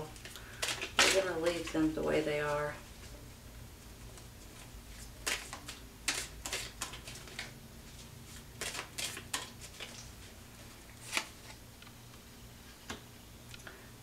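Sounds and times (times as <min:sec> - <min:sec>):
faint room hum: 0:00.0 - 0:14.0
cards being shuffled: 0:00.1 - 0:01.9, 0:04.1 - 0:11.6.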